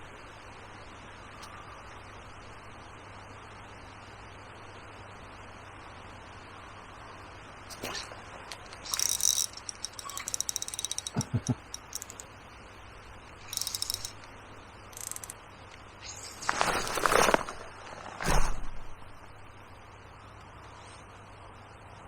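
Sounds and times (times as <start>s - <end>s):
fishing tackle clicking and rattling: 8.5s - 12.3s, 13.3s - 14.3s, 15.0s - 15.4s
rustle: 15.0s - 19.4s.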